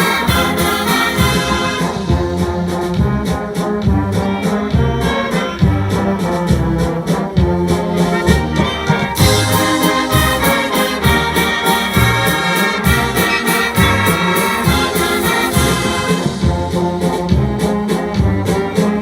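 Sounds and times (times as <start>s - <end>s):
brass band playing a hymn: 0.0s - 19.0s
low brass bass notes: 0.0s - 19.0s.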